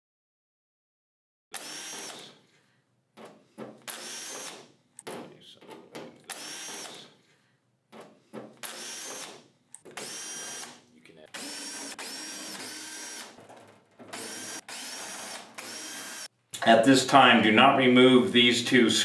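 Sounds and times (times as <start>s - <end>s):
cordless drill spinning: 1.6s - 2.6s, 3.9s - 4.7s, 6.3s - 7.3s, 8.6s - 13.4s, 14.1s - 16.3s.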